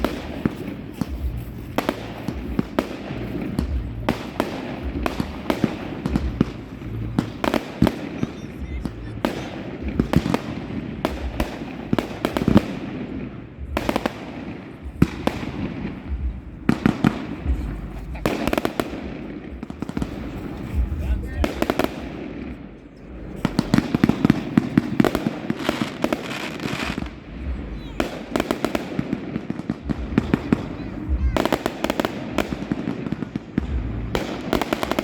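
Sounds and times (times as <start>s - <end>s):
low rumble: 0.0s - 7.6s, 14.8s - 25.2s, 26.9s - 28.4s, 29.8s - 31.6s
fireworks bangs and crackles: 0.0s - 35.0s.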